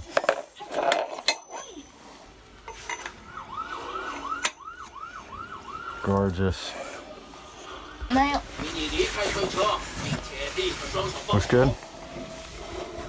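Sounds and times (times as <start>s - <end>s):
metal poles clinking: 0.0s - 1.9s, 2.6s - 3.2s.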